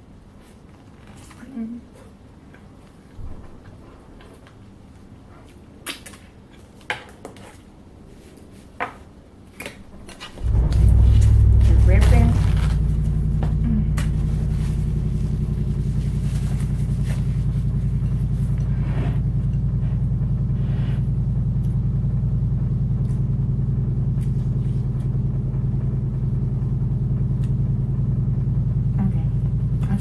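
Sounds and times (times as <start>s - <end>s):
low mechanical rumble: 9.9s - 30.0s.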